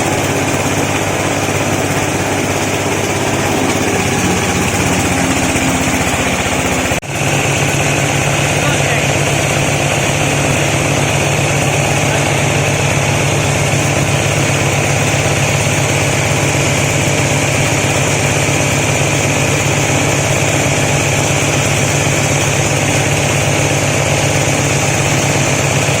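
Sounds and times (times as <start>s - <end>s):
flour mill running: 0.0s - 26.0s.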